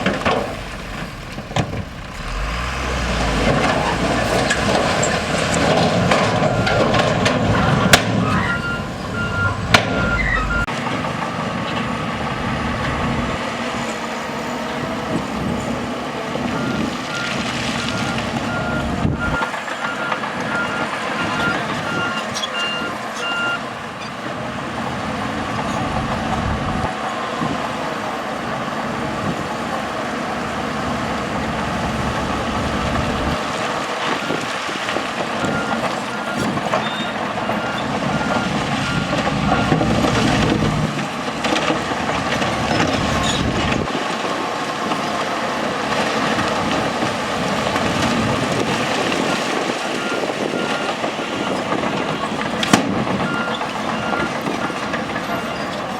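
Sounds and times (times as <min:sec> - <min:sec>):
heavy diesel engines under load: 0:00.0 - 0:55.9
reversing alarm beeping: 0:07.5 - 0:10.7, 0:16.5 - 0:23.6, 0:35.4 - 0:39.8, 0:49.9 - 0:52.2, 0:53.2 - 0:54.4.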